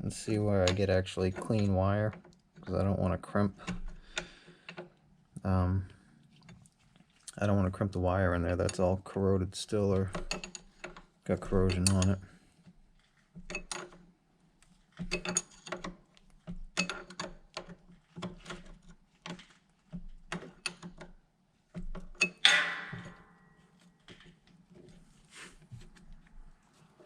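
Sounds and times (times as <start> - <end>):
hand tools clicking on metal: 0.3 - 2.8, 9.8 - 12.3
ringing metal clank: 22.3 - 23.6.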